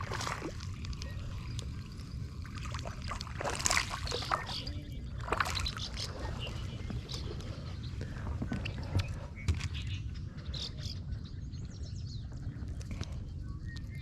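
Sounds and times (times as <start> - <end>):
water sloshing and splashing: 0.0 - 9.7
steady low rumble: 0.0 - 14.0.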